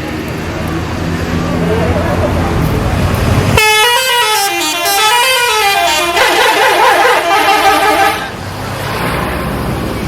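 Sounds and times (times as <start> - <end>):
multi-tone musical air horn: 3.6 - 8.4.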